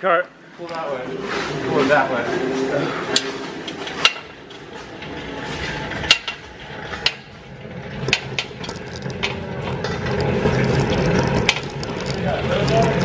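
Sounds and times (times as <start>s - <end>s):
metallic clanks and knocks: 3.1s - 13.0s.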